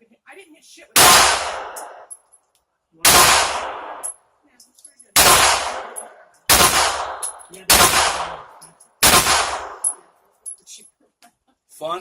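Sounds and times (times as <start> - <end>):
pistol shots with echo: 1.0 - 2.1, 3.0 - 4.2, 5.2 - 10.0.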